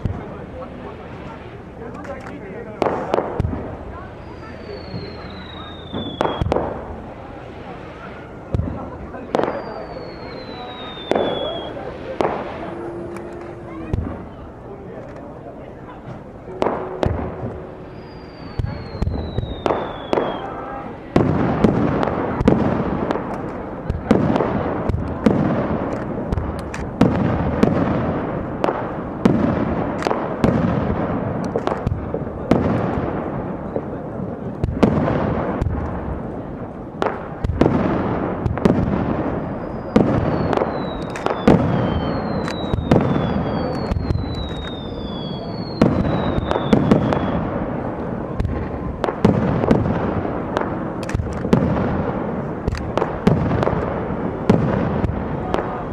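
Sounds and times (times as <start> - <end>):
fireworks bursting with crackle: 0.0 - 55.9
descending firework whistles: 3.0 - 14.9, 16.4 - 22.4, 38.8 - 47.6.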